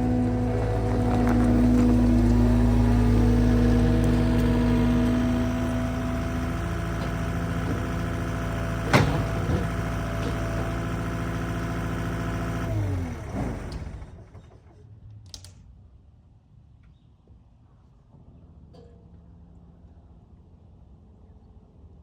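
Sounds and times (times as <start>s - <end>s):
skid steer engine running: 0.0s - 14.8s.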